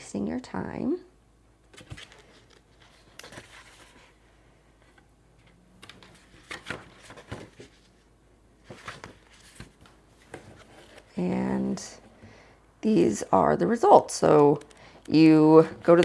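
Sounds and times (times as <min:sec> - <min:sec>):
book pages rustling: 0:01.7 - 0:12.2, 0:14.3 - 0:16.0.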